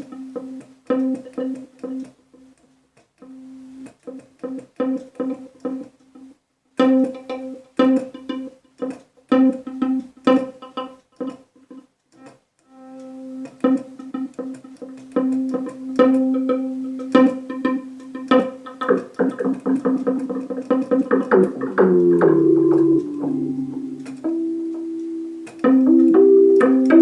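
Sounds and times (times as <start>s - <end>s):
keyboard playing plucked guitar-like notes: 6.8s - 8.5s, 12.7s - 27.0s.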